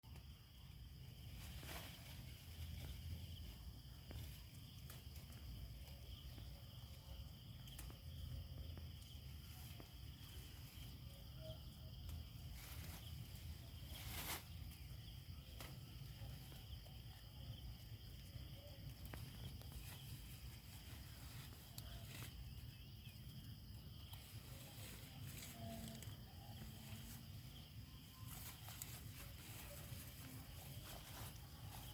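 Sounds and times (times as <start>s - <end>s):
rustle or clatter: 1.3s - 3.2s, 12.5s - 14.9s.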